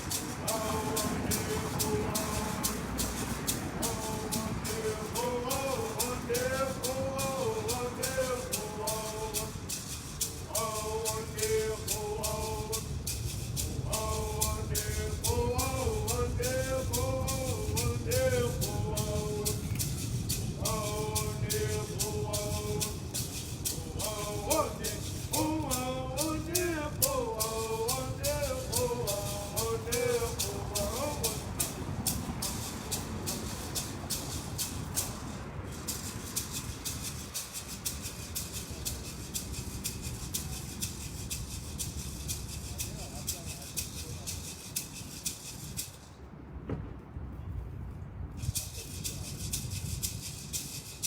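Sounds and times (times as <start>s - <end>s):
person chanting: 0.0s - 33.9s
rattle shaken in a steady beat: 0.0s - 46.3s, 48.3s - 51.0s.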